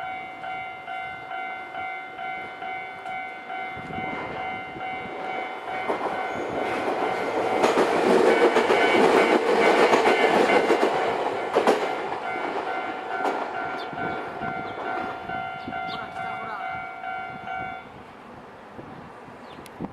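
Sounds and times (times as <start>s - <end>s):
level crossing warning bell ringing: 0.0s - 18.0s
train wheels clacking over rail joints: 5.2s - 15.9s.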